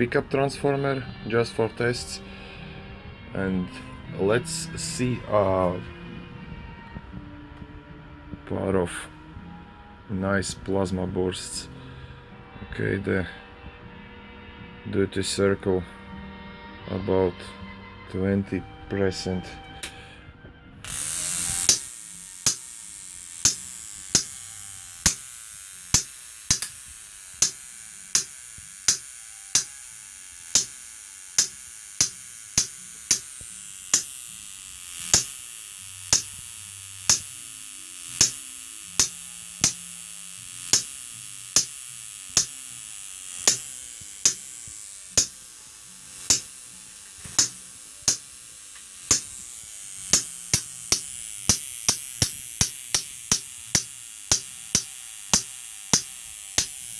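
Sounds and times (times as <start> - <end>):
high-voltage sparks cracking: 20.9 - 56.9
steady hiss: 21.7 - 29.8, 30.5 - 34.2, 43.3 - 56.9.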